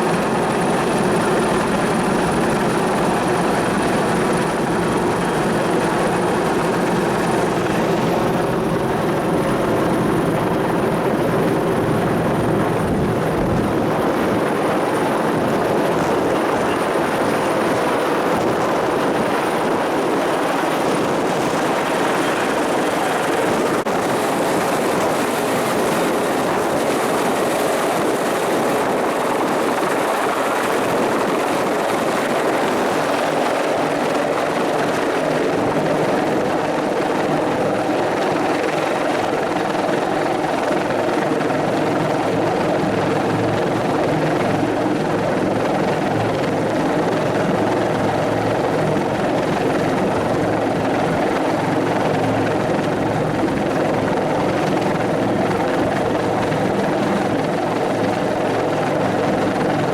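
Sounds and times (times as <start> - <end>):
turbine engine whine: 0.0 - 37.8
helicopter rotor beating: 0.0 - 59.9.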